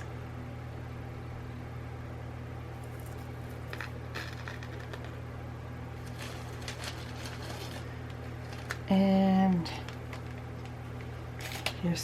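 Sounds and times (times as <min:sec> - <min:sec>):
steady low hum: 0:00.0 - 0:12.0
plastic bags crinkling: 0:06.0 - 0:09.0, 0:09.6 - 0:11.8.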